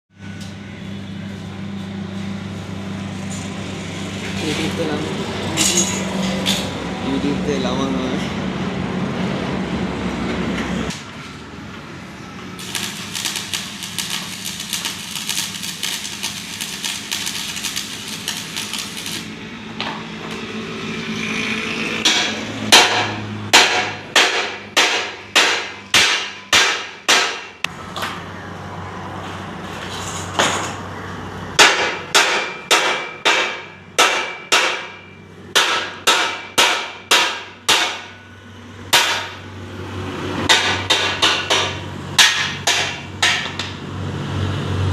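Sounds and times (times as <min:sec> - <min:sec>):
hammer striking metal: 0:22.0 - 0:27.7, 0:31.6 - 0:38.2, 0:38.9 - 0:39.5, 0:40.4 - 0:43.8.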